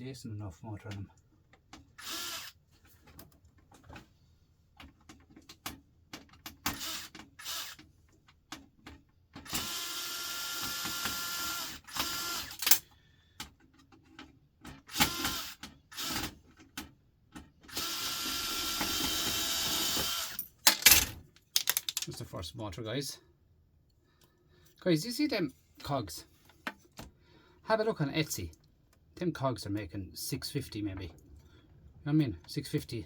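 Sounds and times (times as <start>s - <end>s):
cordless drill whining: 2.0s - 2.6s, 6.7s - 7.8s, 9.4s - 12.7s, 14.9s - 16.3s, 17.7s - 20.4s
small metal parts clicking: 20.2s - 22.2s.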